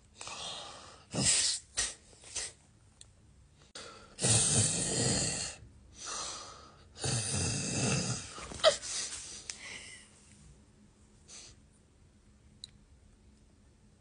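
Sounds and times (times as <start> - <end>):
man snoring: 4.2 - 5.6, 6.9 - 8.4
soft breath: 8.3 - 10.5.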